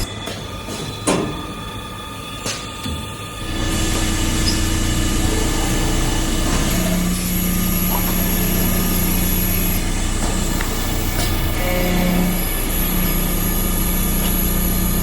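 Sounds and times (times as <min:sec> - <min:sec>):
machine humming with steady tones: 0:00.0 - 0:15.0.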